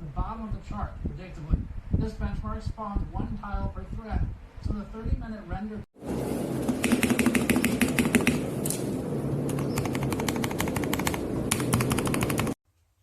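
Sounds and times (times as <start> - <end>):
typing on mechanical keyboard: 6.8 - 8.4, 9.5 - 12.6.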